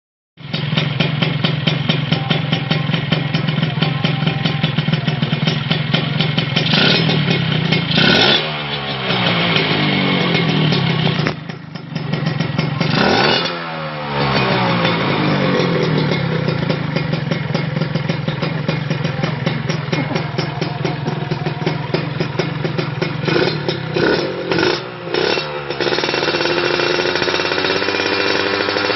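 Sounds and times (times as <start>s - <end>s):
motorcycle idling and revving: 0.4s - 28.9s.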